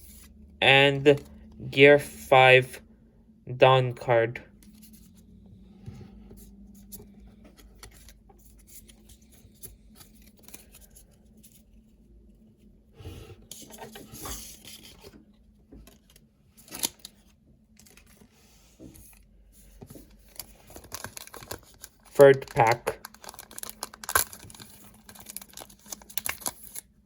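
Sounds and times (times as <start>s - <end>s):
foil wrapper crinkling: 20.2s - 27.0s.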